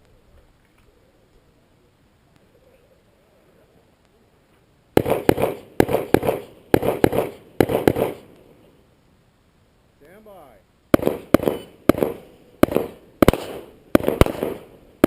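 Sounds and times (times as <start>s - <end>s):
gunshots echoing: 5.0s - 8.4s, 10.9s - 15.0s.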